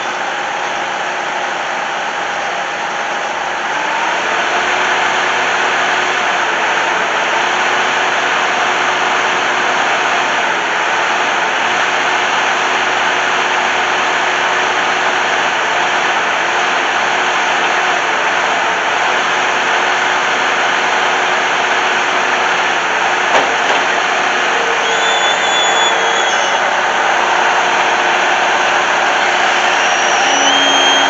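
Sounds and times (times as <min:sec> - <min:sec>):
skid steer engine running at high revs: 0:00.0 - 0:31.0
faint steady whine: 0:21.4 - 0:31.0.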